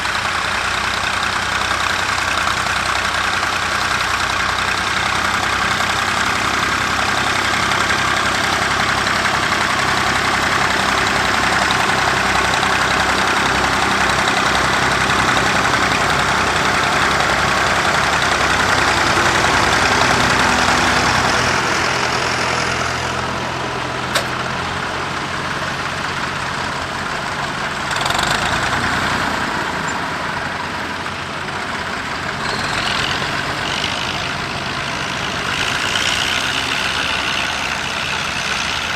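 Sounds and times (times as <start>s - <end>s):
tractor engine running: 0.0s - 38.9s
sharp click: 24.1s - 24.4s.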